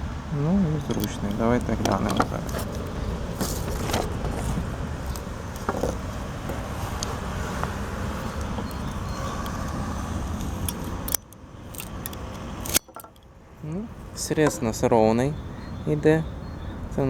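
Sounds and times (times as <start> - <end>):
steady low rumble: 0.0 - 12.6
ratchet pruning shears clicking: 0.9 - 13.3.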